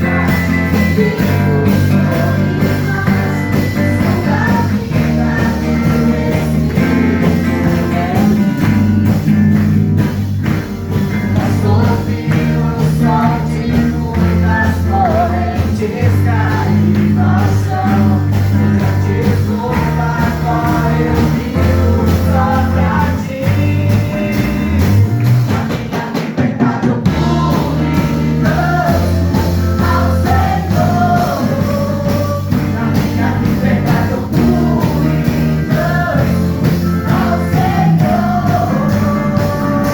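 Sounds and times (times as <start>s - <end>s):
person singing: 0.0s - 8.8s, 25.6s - 39.9s
low bass line: 0.0s - 25.6s, 27.1s - 39.9s
rock song: 0.0s - 39.9s.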